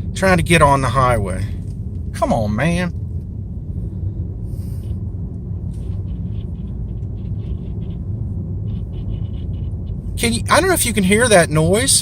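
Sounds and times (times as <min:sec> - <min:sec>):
road and engine rumble: 0:00.0 - 0:12.0.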